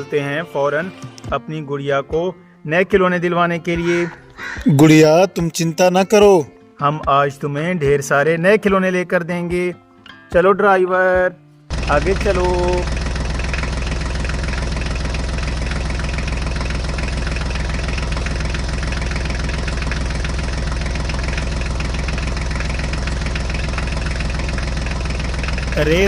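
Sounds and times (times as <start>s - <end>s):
tractor engine running: 11.7s - 26.0s.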